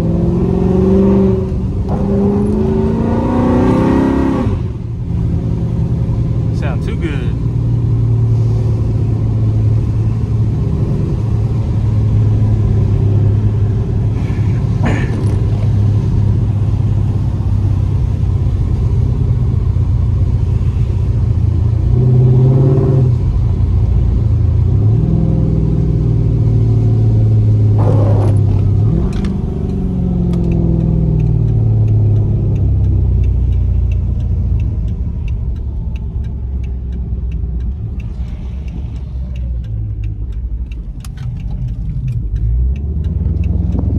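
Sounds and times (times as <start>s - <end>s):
car engine while driving: 0.0s - 43.9s
faint regular ticking: 29.1s - 43.9s.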